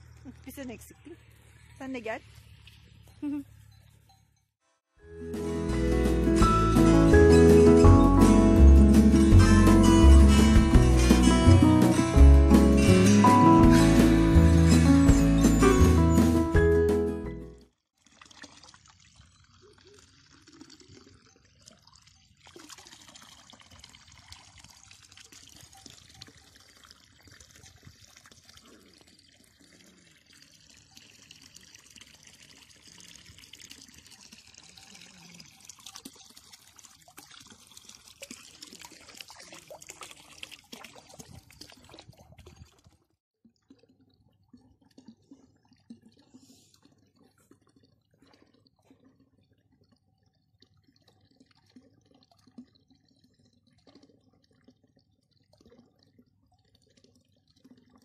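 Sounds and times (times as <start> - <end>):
water pouring and splashing: 0.0 - 3.2, 5.4 - 16.1, 17.9 - 58.0
water dripping: 18.0 - 58.0.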